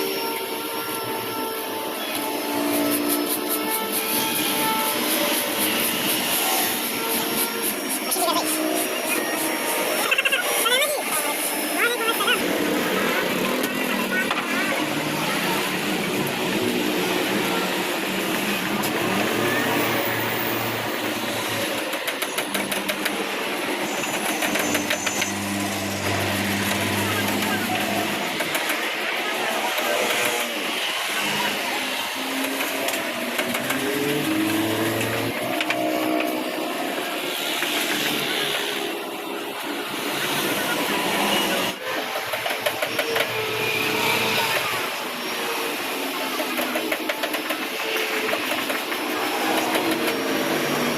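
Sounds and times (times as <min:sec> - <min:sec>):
router machine humming: 0:00.0 - 0:50.9
scattered clicks: 0:21.8 - 0:23.2.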